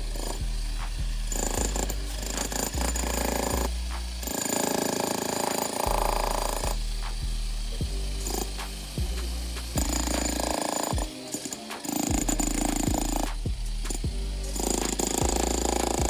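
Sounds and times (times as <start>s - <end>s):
deep sustained bass notes: 0.0s - 4.3s, 5.9s - 10.5s, 12.2s - 16.0s
pulsing mid-range synth layer: 0.0s - 16.0s.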